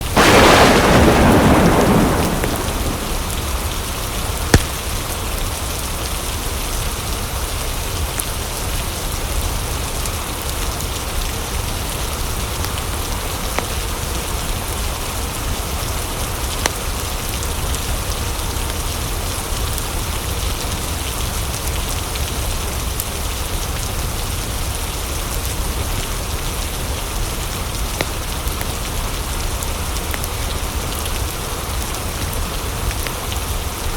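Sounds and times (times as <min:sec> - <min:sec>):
low thunder rumble: 0:00.0 - 0:04.5
steady rain falling: 0:00.0 - 0:33.9
sharp clicks or pops: 0:04.6 - 0:04.8.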